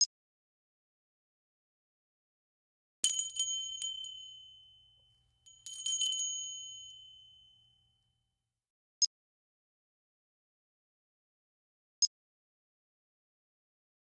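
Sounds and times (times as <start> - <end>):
small metal bell ringing: 3.0 - 7.8.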